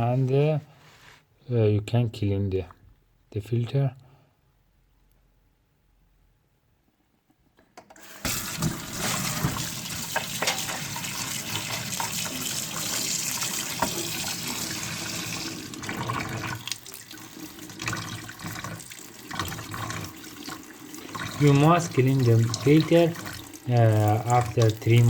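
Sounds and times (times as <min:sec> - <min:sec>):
water running from a tap: 0:08.0 - 0:25.0.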